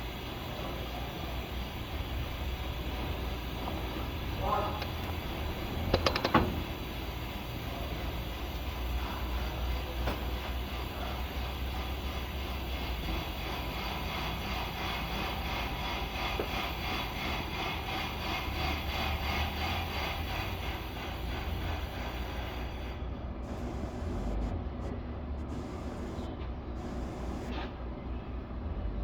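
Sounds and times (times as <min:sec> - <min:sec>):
engine grinding noise: 0:11.3 - 0:22.8, 0:23.4 - 0:27.6
car engine rumbling: 0:23.4 - 0:27.6.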